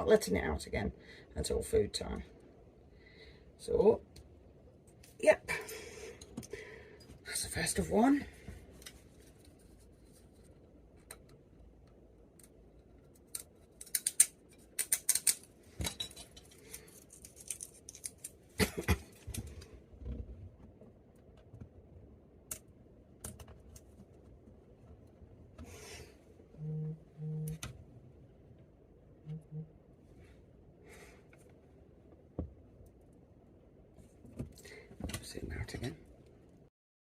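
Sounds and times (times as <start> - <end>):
plastic packaging clicks and rustling: 16.4 - 18.5
short low hums: 26.6 - 27.7, 29.2 - 29.9.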